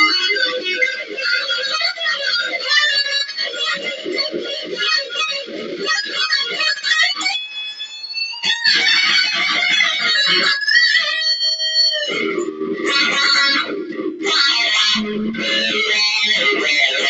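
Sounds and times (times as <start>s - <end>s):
electric guitar solo: 0.0s - 17.0s.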